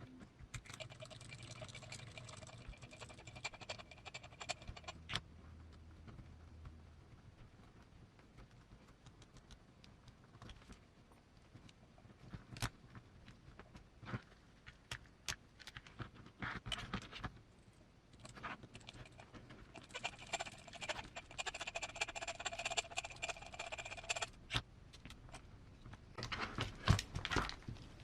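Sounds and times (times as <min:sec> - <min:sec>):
small tools clicking and tapping: 0:00.6 - 0:05.2, 0:18.2 - 0:25.4.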